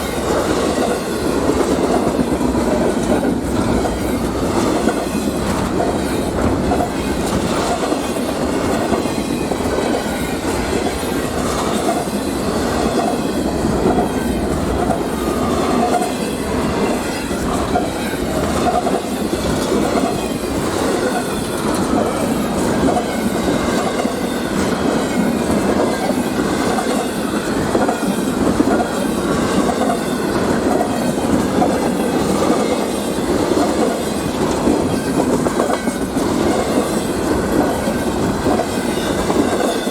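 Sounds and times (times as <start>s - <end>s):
train cars clattering over rails: 0.0s - 39.9s.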